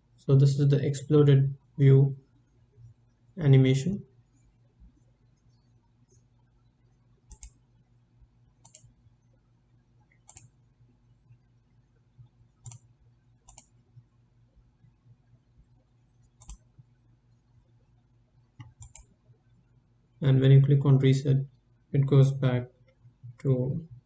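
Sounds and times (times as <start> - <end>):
low steady hum: 0.0 - 24.0
computer mouse clicks: 7.3 - 7.6, 8.6 - 9.0, 10.1 - 10.6, 12.6 - 13.8, 16.2 - 16.7, 18.6 - 19.1.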